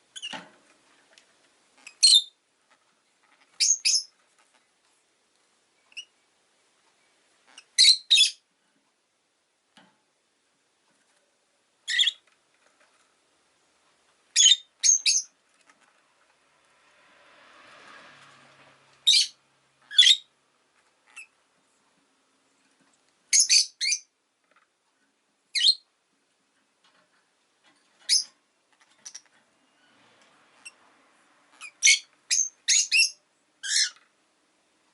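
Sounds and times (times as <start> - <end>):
lovebird high-pitched chirps: 0.1 - 0.4, 1.8 - 2.4, 3.4 - 4.1, 5.8 - 6.2, 7.5 - 8.5, 11.8 - 12.2, 14.3 - 15.4, 19.0 - 20.3, 21.0 - 21.4, 23.3 - 24.1, 25.5 - 25.9, 28.0 - 29.3, 31.5 - 34.0.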